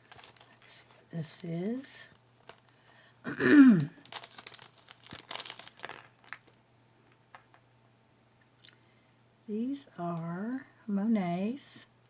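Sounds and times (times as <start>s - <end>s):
packaging crinkling and rustling: 0.0s - 1.1s, 2.1s - 3.0s, 3.9s - 6.6s.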